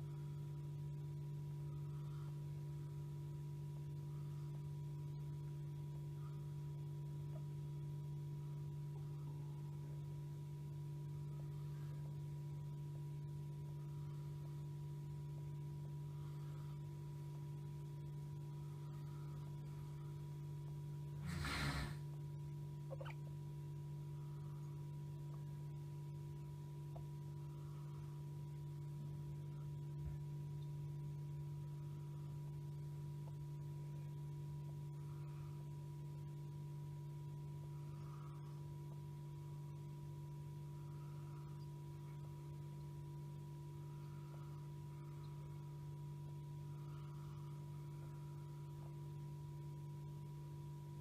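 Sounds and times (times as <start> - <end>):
faint soft sounds: 0.0 - 51.0
low electrical hum: 0.0 - 51.0.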